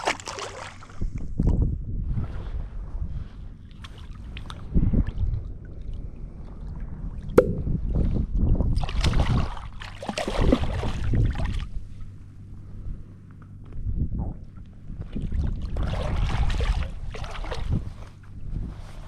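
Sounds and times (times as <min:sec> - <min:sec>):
sharp click: 0:07.4 - 0:07.6.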